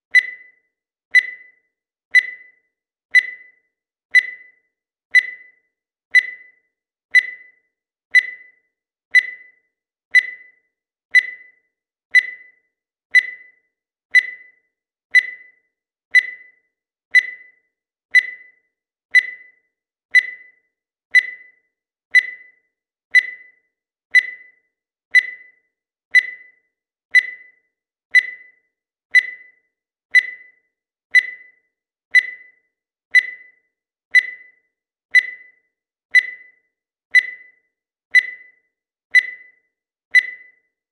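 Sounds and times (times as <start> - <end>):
digital timer beeping: 0.0 - 40.9.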